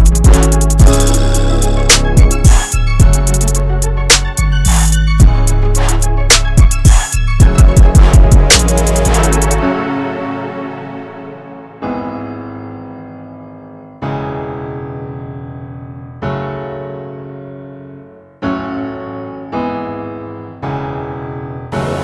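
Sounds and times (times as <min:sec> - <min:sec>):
slow keyboard chords: 0:00.0 - 0:12.8.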